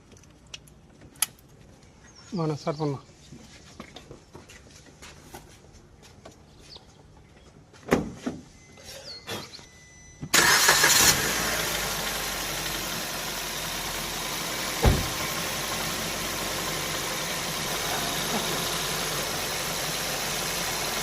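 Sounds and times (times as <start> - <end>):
car engine starting and idling: 10.3 - 21.0
low thump: 14.8 - 15.2.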